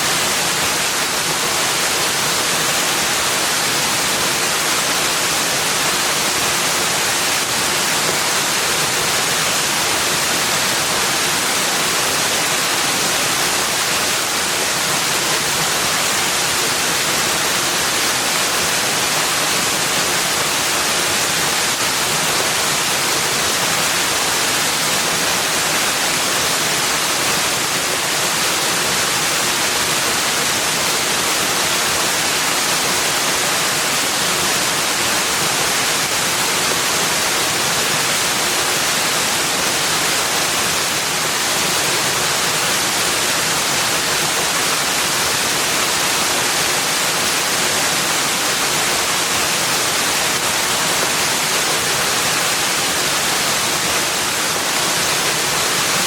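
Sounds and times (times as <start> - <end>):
rushing water: 0.0 - 56.0.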